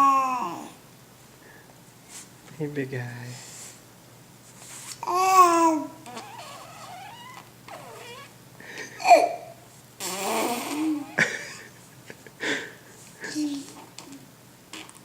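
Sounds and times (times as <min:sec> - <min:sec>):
baby cooing: 0:00.0 - 0:00.8, 0:05.0 - 0:08.3, 0:09.0 - 0:11.2, 0:13.2 - 0:15.0
baby crying: 0:00.0 - 0:00.8, 0:05.0 - 0:08.3
baby squealing: 0:05.1 - 0:08.3.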